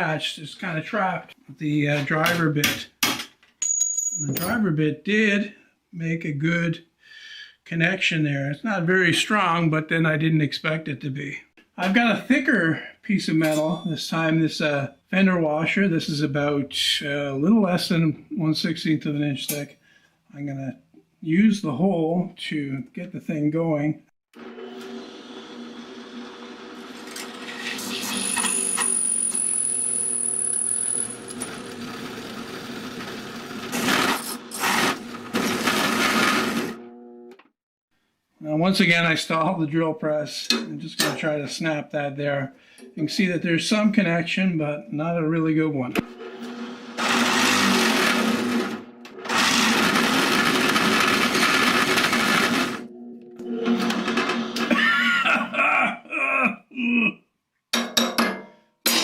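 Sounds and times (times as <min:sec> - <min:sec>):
drill press motor running: 0:24.4 - 0:37.3, 0:46.0 - 0:54.8
harsh grinding: 0:27.0 - 0:37.0, 0:46.0 - 0:54.8.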